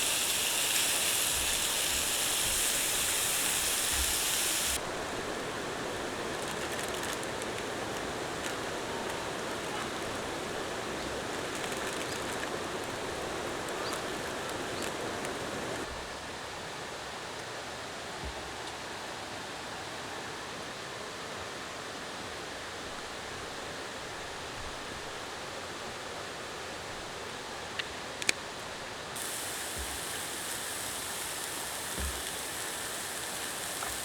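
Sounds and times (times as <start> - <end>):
stream flowing: 0.0 - 18.0, 28.7 - 34.0.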